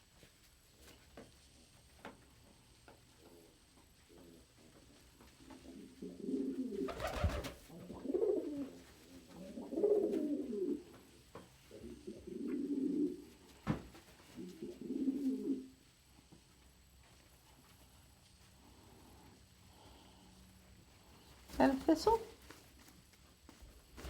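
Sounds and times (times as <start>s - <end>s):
pigeon cooing: 3.2s - 11.0s, 11.7s - 13.5s, 14.2s - 15.8s.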